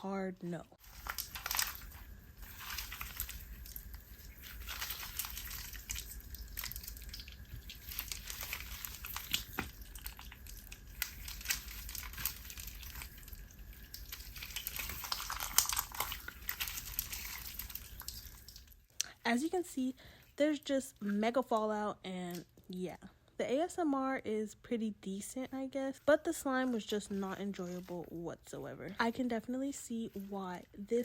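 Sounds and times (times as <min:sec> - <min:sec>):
hands squishing sticky slime: 0:00.8 - 0:18.7.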